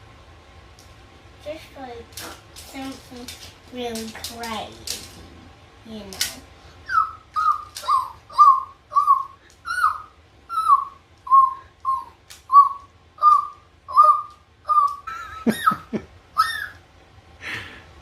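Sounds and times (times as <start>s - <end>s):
child making squeaky mouth noises: 6.9s - 15.1s.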